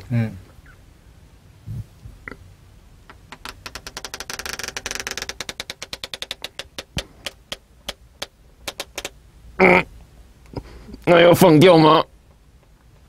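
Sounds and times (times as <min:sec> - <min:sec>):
pen clicking against paper: 0:03.3 - 0:09.1.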